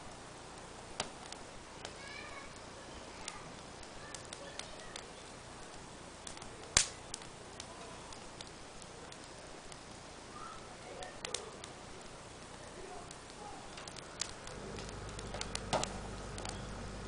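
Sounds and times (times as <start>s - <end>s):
fire crackling: 0.0s - 17.0s
fire sharp pop: 6.2s - 8.2s, 13.2s - 16.6s.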